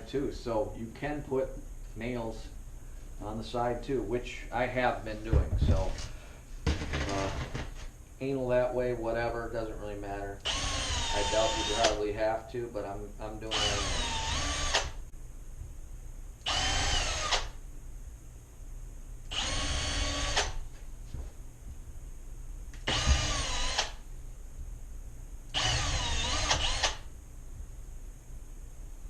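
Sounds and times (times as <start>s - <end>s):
power drill running: 10.4s - 12.0s, 13.5s - 15.0s, 16.4s - 17.6s, 19.3s - 20.6s, 22.8s - 24.0s, 25.5s - 27.1s.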